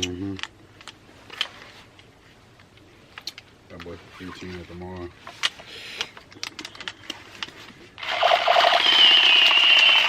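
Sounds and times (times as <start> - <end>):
electronic machine-gun burst: 8.0 - 10.0
plastic toy clicks: 8.0 - 10.0.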